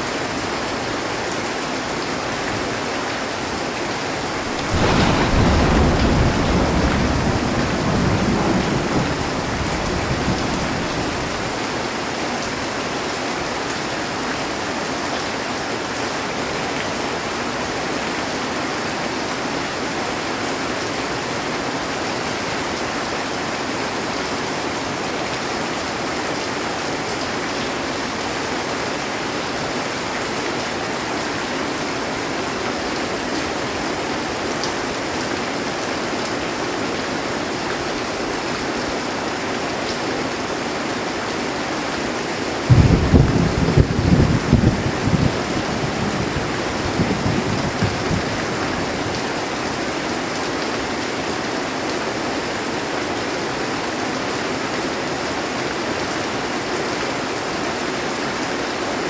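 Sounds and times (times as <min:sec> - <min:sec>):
heavy rain on metal roof: 0:00.0 - 0:59.0
low thunder rumble: 0:04.3 - 0:11.8, 0:42.7 - 0:49.2.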